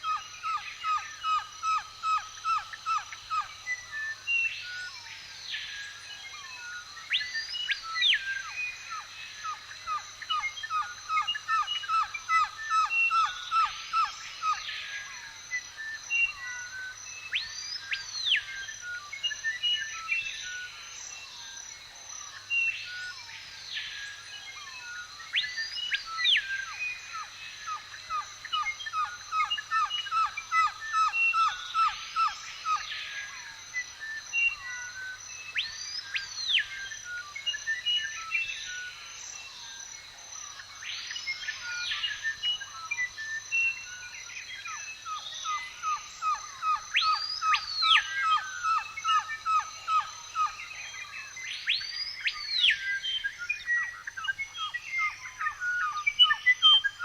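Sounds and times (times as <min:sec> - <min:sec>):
bird chirps: 0:40.5 - 0:57.0.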